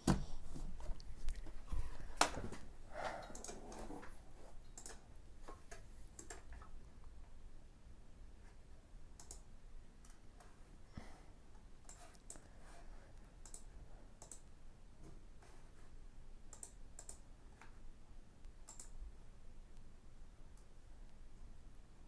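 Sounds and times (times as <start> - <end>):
faint room hum: 0.0 - 22.0
computer mouse clicking: 3.2 - 4.0, 4.6 - 6.8, 9.2 - 10.5, 11.8 - 12.5, 13.4 - 14.5, 16.5 - 17.8, 18.6 - 19.0.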